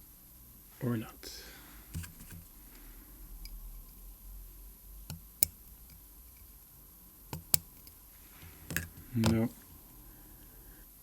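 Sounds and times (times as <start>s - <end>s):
small metal tool clicks: 7.3s - 8.0s.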